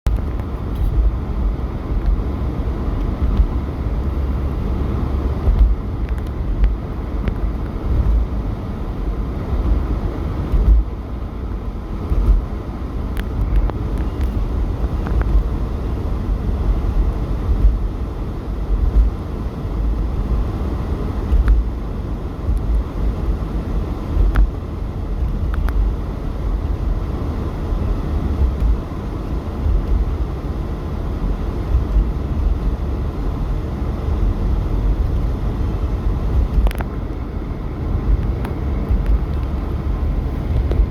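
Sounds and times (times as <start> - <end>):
wind gusting against microphone: 0.1 - 40.9.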